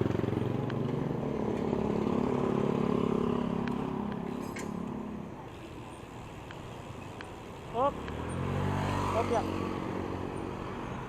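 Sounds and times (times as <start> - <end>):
steady traffic noise: 0.0 - 11.0
vehicle engine passing by: 7.9 - 11.0.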